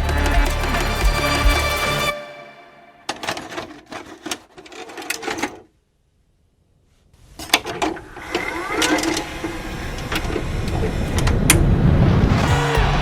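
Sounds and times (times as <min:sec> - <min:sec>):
rising whine: 0:09.2 - 0:13.0.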